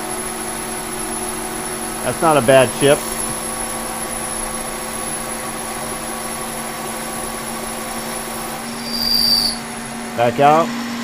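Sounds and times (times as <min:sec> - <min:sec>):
machine tool humming: 0:00.0 - 0:11.0.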